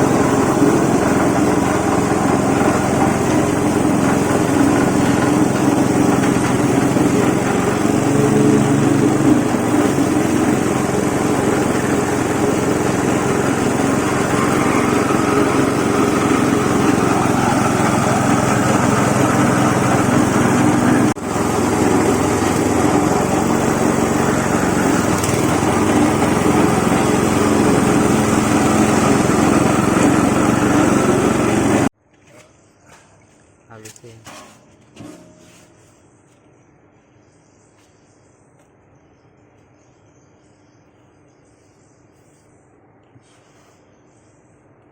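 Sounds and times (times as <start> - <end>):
salt grinder running: 0.0 - 31.9.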